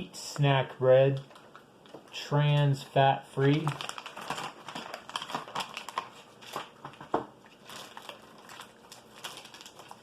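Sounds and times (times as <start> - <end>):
plastic packets crinkling: 1.1 - 10.0.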